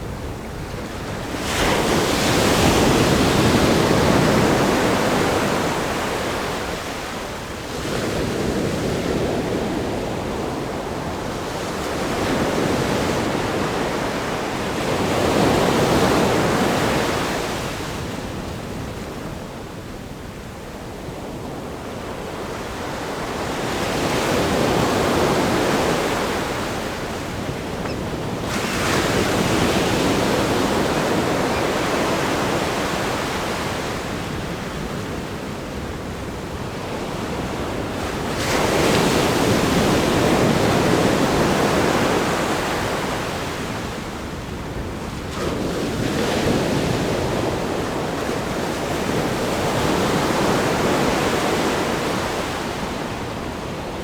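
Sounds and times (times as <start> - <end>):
waves crashing: 24.0 - 34.1
ocean surf breaking: 24.5 - 34.0.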